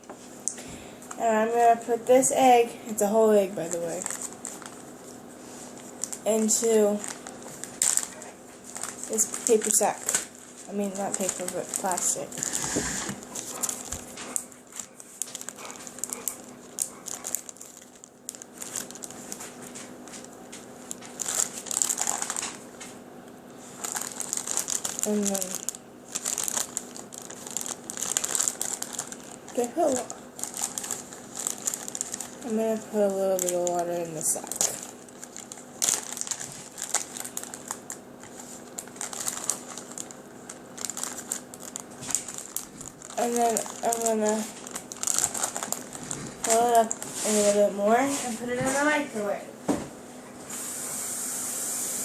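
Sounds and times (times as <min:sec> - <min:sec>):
plastic bag crinkling: 0:00.3 - 0:49.3.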